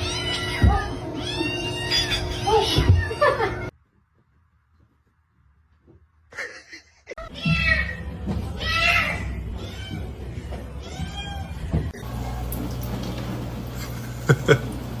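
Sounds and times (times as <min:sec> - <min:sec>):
cat meowing: 0:00.0 - 0:03.5.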